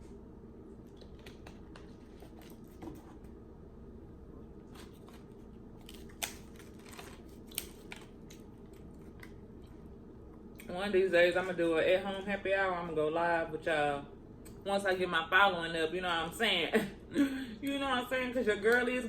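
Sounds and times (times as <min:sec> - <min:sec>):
low hum: 0:00.0 - 0:16.1
chewing clicks and crunches: 0:00.8 - 0:02.8, 0:04.7 - 0:09.8.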